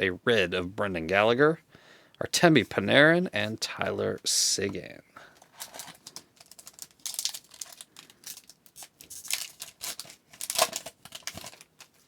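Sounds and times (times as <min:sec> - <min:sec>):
card pack wrapper crinkling: 0:05.4 - 0:12.0.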